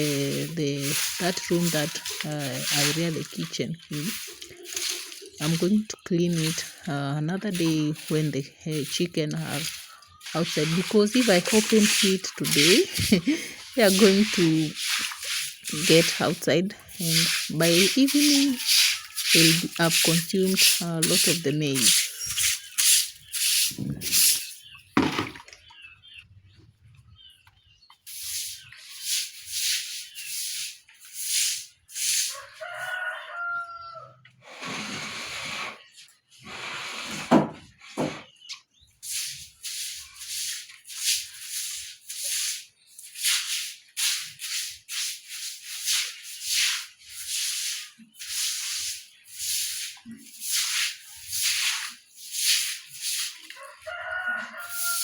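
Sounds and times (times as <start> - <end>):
stiff brush scrubbing wet floor: 0.0 - 26.2, 27.9 - 55.0
rooster crowing: 32.4 - 34.2, 53.6 - 55.0.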